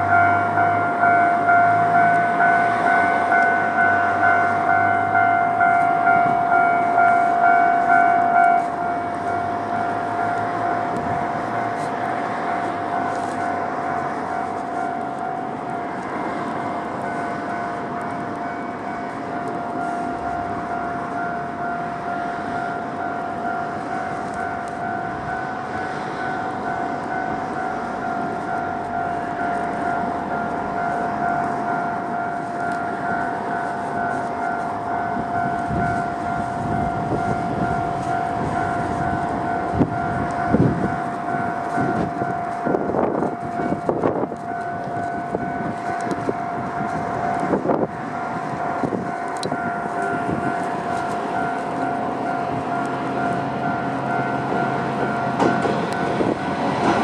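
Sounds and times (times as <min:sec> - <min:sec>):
diesel railcar passing: 0:00.0 - 0:57.0
level-crossing warning bell: 0:00.0 - 0:57.0
wheel clacks over rail joints: 0:48.8 - 0:57.0.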